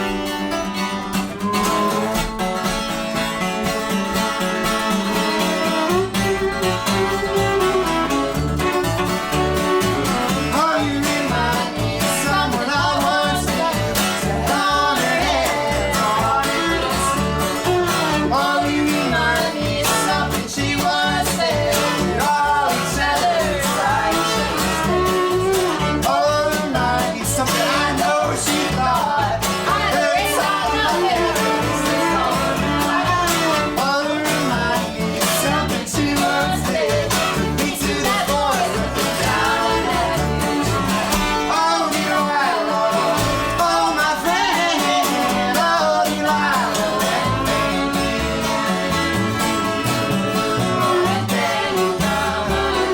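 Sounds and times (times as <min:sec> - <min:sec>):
acoustic folk band playing: 0:00.0 - 0:52.9
bowed viola melody: 0:00.2 - 0:52.9.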